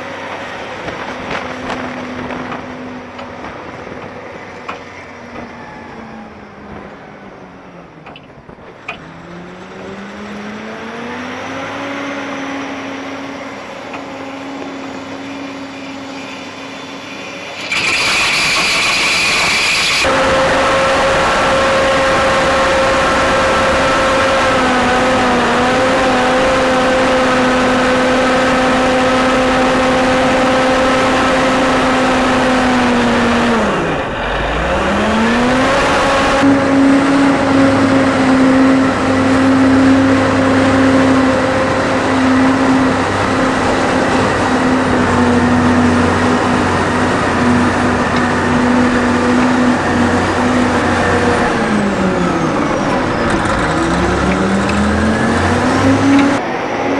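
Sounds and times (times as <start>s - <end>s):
diesel engine revving: 17.3s - 56.9s.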